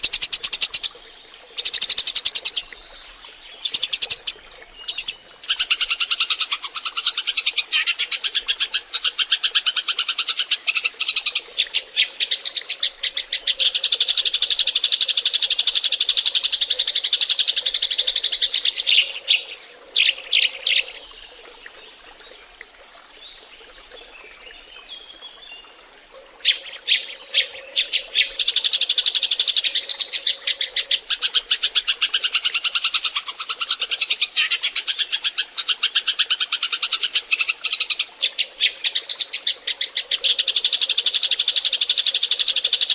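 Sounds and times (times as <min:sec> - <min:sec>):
sparrows chirping and chattering: 0:00.0 - 0:00.9, 0:01.6 - 0:02.7, 0:03.6 - 0:05.2.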